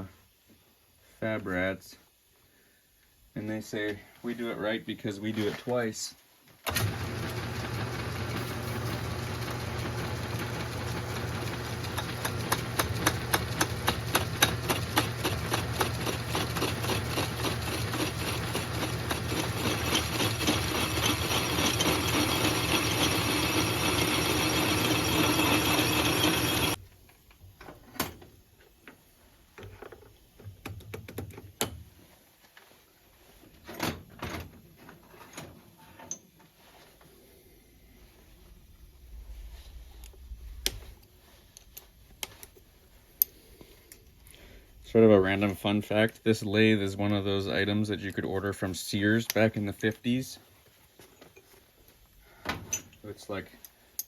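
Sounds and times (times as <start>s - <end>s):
metal lathe running with clatter: 6.7s - 26.8s.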